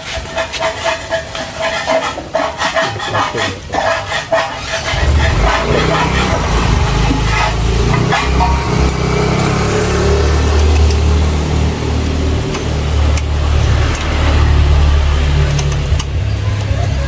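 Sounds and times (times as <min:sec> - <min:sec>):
small engine idling: 0:04.4 - 0:17.0.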